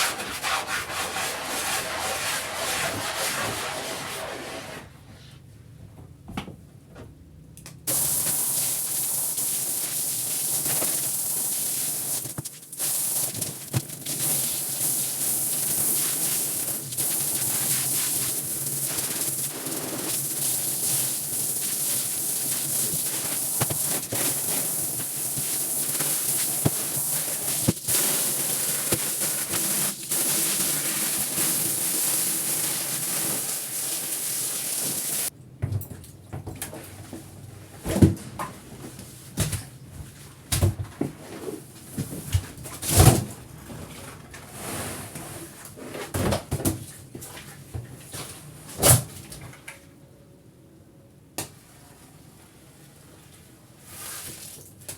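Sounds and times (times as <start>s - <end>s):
water spraying onto rug: 7.9s - 35.3s.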